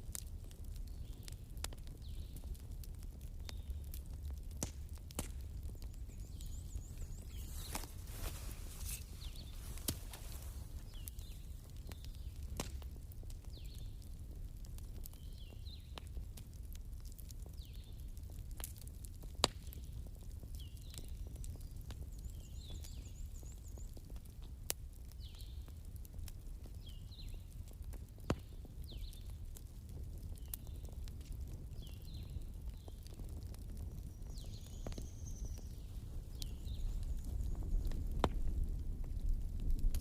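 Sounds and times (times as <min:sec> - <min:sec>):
bonfire crackling: 0:00.0 - 0:40.0.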